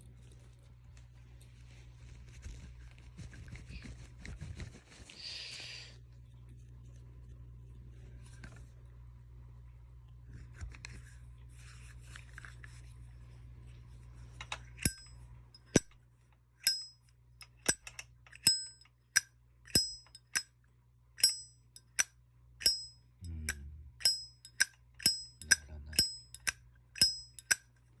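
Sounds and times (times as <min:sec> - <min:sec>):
lighter lid metallic clicks: 0:16.6 - 0:20.4, 0:21.2 - 0:22.9, 0:23.5 - 0:27.6.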